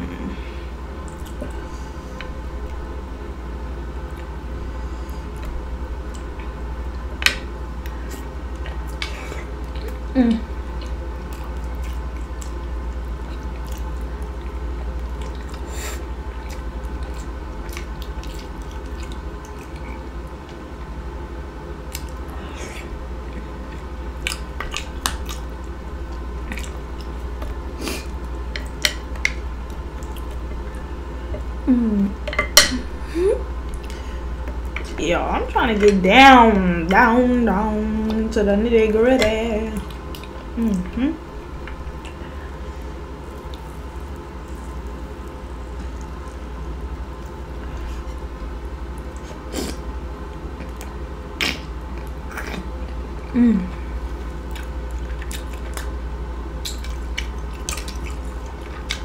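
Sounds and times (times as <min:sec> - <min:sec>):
steady low hum: 0:00.0 - 0:59.0
chewing and lip smacking: 0:01.0 - 0:02.8, 0:07.8 - 0:20.7, 0:21.8 - 0:31.5, 0:39.8 - 0:53.3, 0:53.9 - 0:59.0.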